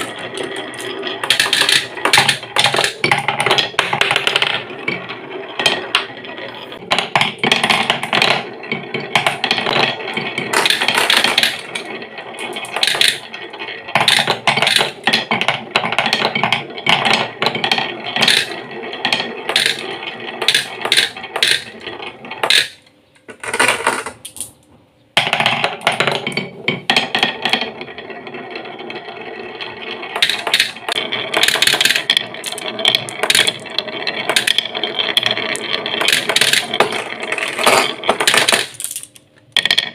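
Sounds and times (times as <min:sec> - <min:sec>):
marbles clicking against wood: 0:00.0 - 0:24.6, 0:29.6 - 0:39.9
marbles rolling on wooden tracks: 0:00.0 - 0:24.6, 0:25.2 - 0:39.9.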